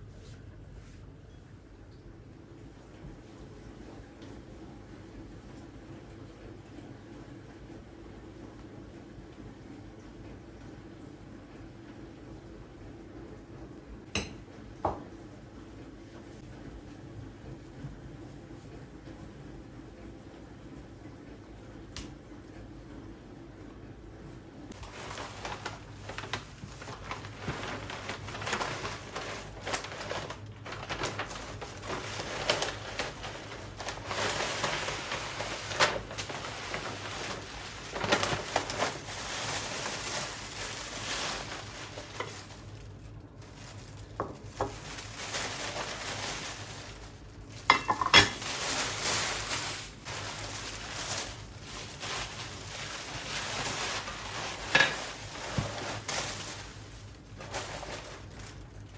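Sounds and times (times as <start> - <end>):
dishes and utensils clinking: 14.2 - 14.5, 47.7 - 48.5.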